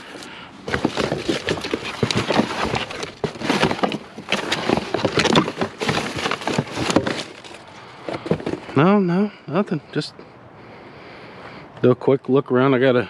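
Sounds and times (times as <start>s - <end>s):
rummaging through junk: 0.0s - 9.0s.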